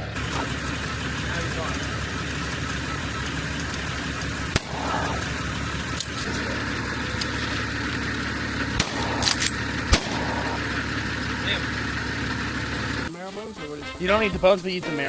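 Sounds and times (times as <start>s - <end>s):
engine idling: 0.0s - 15.0s
sharp clicks: 3.2s - 4.9s, 8.7s - 10.3s.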